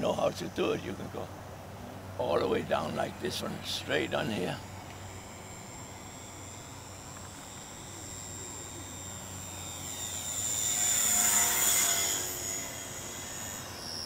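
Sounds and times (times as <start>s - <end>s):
model airplane motor whining: 0.0s - 14.0s.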